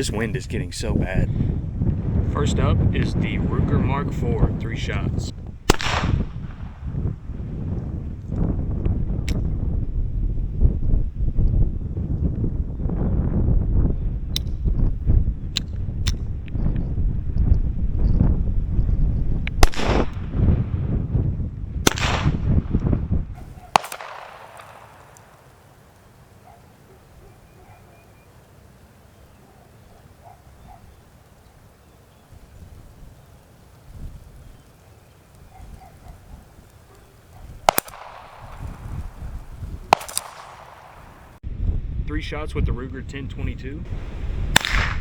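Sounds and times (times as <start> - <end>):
wind rumbling on microphone: 0.0 - 45.0
distant pistol shots: 5.7 - 6.9, 19.6 - 20.4, 21.8 - 26.0, 37.6 - 41.4, 44.5 - 45.0.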